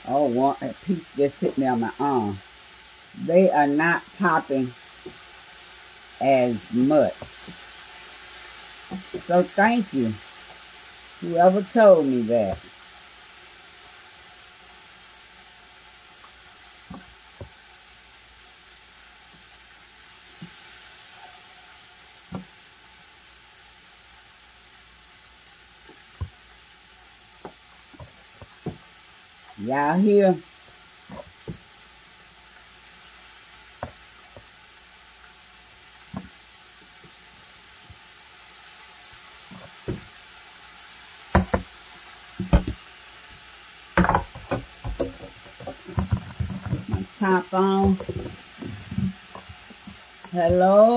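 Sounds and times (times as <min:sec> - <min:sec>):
chicken deep-frying in oil: 0:00.0 - 0:50.9
oil popping: 0:27.4 - 0:29.0, 0:32.8 - 0:50.9.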